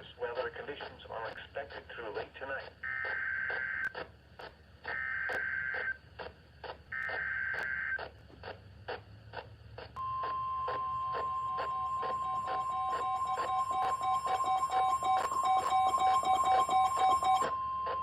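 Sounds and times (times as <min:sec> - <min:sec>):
faint regular clicks: 0:02.6 - 0:10.0
steady single-tone attention signal: 0:10.0 - 0:18.0
warbling data bursts: 0:10.0 - 0:18.0.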